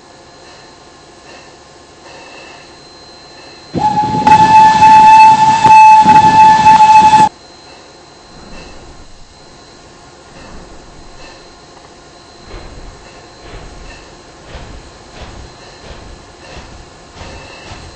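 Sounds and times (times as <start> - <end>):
train whistle blast: 3.7 - 7.3.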